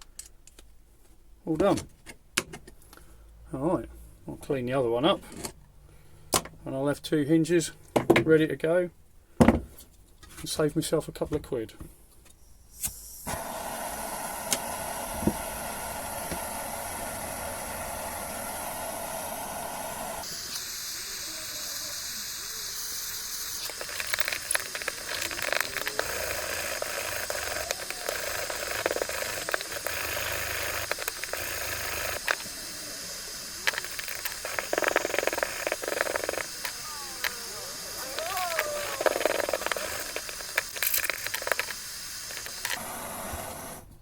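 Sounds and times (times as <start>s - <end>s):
blowtorch flame hissing: 12.8s - 43.9s
paint crackling: 23.4s - 42.8s.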